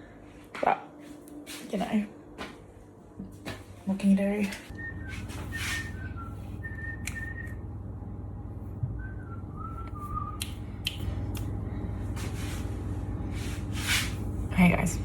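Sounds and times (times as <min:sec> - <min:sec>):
steady low hum: 0:00.0 - 0:15.0
whistled notes: 0:04.7 - 0:07.7, 0:08.9 - 0:10.5.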